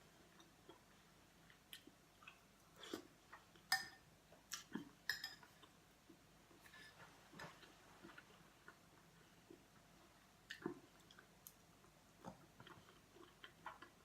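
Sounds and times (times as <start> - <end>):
soft chewing: 0.0 - 14.0
spoon clinking against bowl: 5.1 - 5.5.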